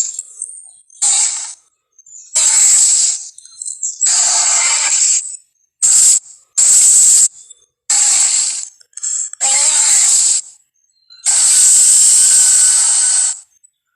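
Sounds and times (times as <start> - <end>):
monster hissing breaths: 11.3 - 13.4.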